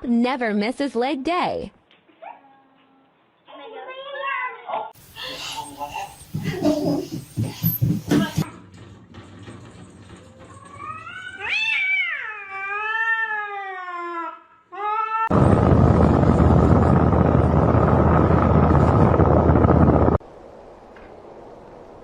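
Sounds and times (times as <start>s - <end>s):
cat yowling meow: 10.7s - 14.1s.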